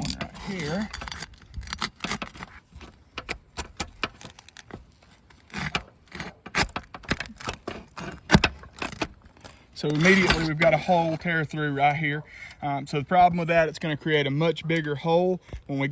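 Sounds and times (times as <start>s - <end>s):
metal bar prying roof shingles: 0.0s - 11.2s.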